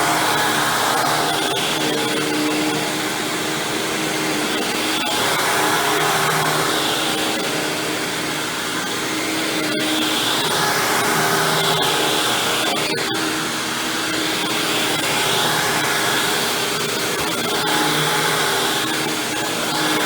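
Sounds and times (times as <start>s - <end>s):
upright vacuum cleaner running: 0.0s - 20.0s.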